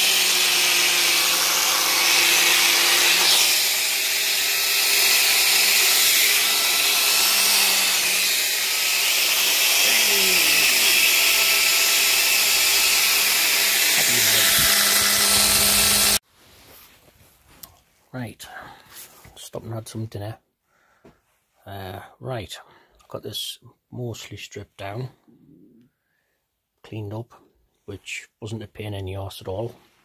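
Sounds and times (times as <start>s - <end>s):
electric grinder on metal: 0.0s - 16.2s.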